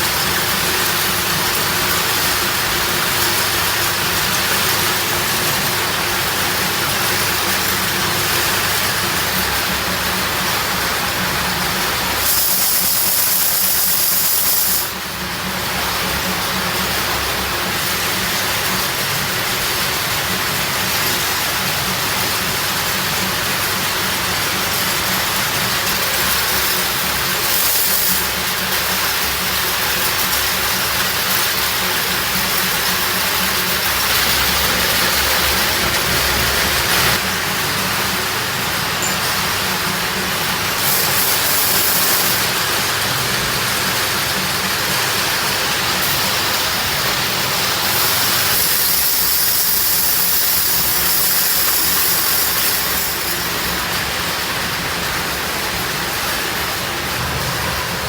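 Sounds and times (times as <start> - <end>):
factory machinery humming: 0.0 - 58.0
loud hiss: 11.8 - 15.1.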